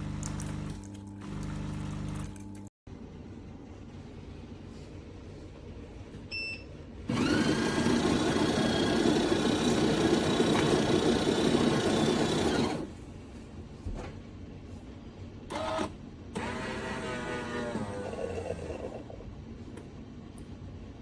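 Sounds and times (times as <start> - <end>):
espresso machine motor running: 0.0 - 2.6, 7.1 - 12.9, 15.5 - 19.2.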